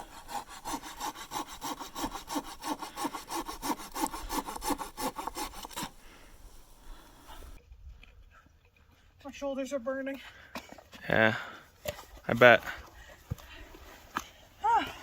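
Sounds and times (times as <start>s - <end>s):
hand saw cutting a log: 0.0s - 7.6s.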